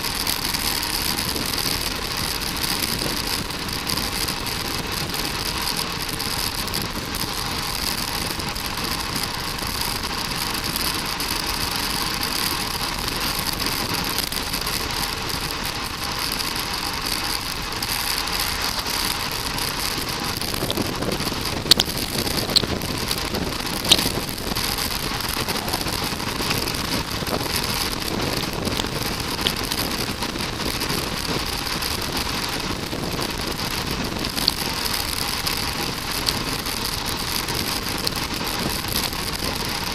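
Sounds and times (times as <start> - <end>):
bicycle road noise: 0.0 - 39.9
sharp clicks: 21.5 - 22.8.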